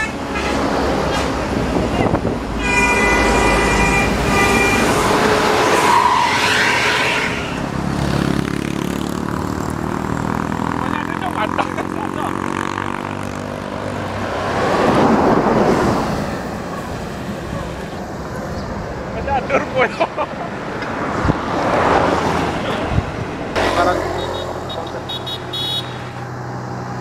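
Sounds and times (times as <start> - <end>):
multi-tone bus horn: 0.0 - 1.4, 2.6 - 7.6, 23.6 - 26.2
vehicle rushing past: 0.5 - 17.9, 20.6 - 27.0.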